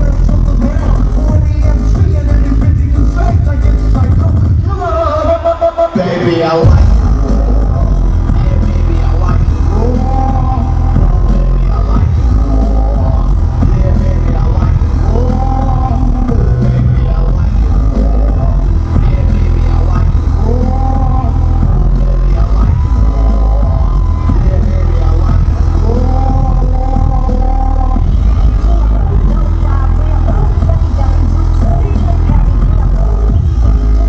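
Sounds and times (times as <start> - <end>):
electronic bass music: 0.0 - 34.0.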